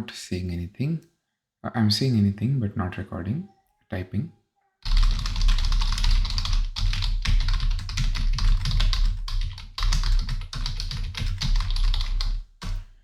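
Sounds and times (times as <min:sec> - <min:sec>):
fast typing on keyboard: 0:04.8 - 0:12.9.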